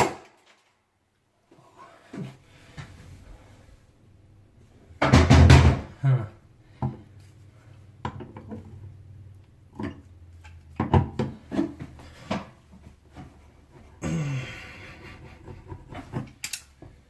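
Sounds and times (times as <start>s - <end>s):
man grunting: 5.9s - 6.4s, 14.0s - 14.8s
breathy sigh: 14.0s - 15.1s.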